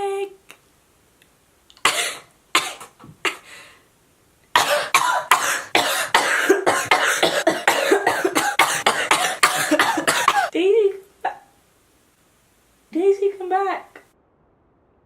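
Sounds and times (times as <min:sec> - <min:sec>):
person coughing: 0:01.8 - 0:03.5, 0:04.6 - 0:10.6.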